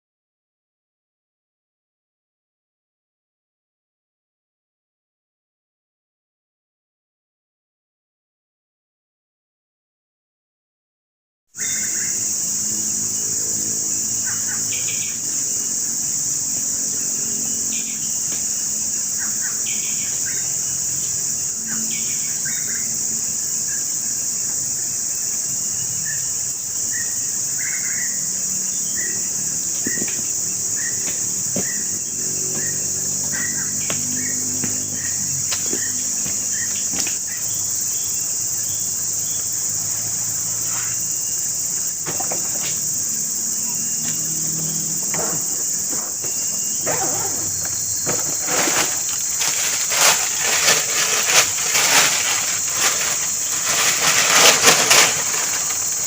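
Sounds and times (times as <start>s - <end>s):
high-pitched insect drone: 11.6s - 56.0s
birds chirping: 41.4s - 49.7s.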